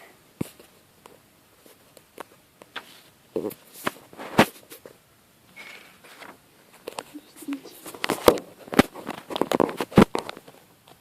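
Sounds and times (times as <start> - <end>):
paper rustling and crinkling: 1.6 - 5.0, 5.6 - 10.7.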